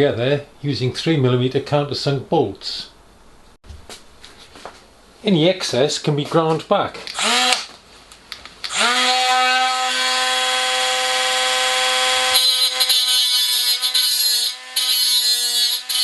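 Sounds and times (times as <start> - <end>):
electric grinder whining: 7.1 - 7.7, 8.6 - 16.0.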